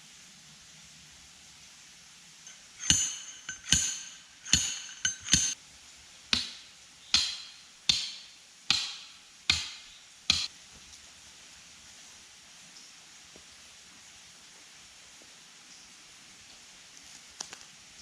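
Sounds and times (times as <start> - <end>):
hammer blows: 2.5 - 5.6, 6.4 - 10.5.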